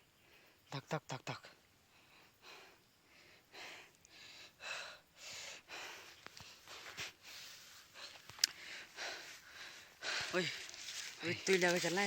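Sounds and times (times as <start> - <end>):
person breathing hard: 1.9 - 10.8
faint clicks: 3.9 - 4.2, 8.0 - 8.6.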